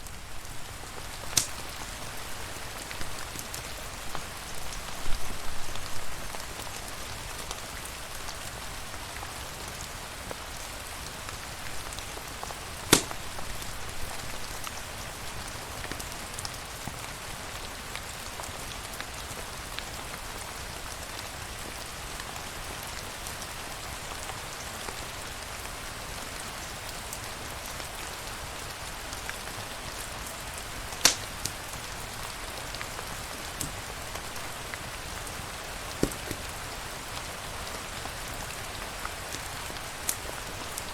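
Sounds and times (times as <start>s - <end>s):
steady rain hiss: 0.0s - 40.9s
sharp pops: 1.4s - 1.6s, 12.8s - 13.6s, 31.0s - 31.6s, 36.0s - 36.5s.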